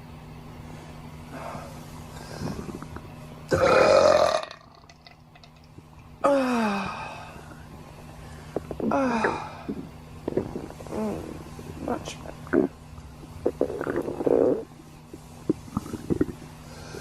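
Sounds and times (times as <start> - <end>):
person burping: 3.5 - 5.0, 13.4 - 14.6.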